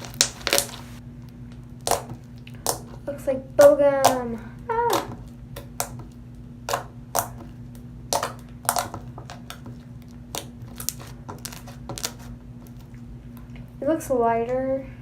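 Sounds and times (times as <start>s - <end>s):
slime sticky pops and clicks: 8.1s - 9.6s.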